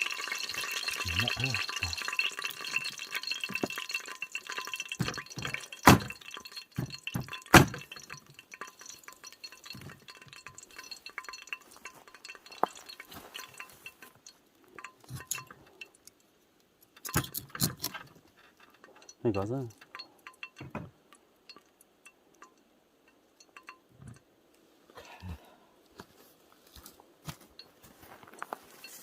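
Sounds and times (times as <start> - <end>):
kitchenware clinking and knocking: 0.0 - 14.2, 17.0 - 20.9.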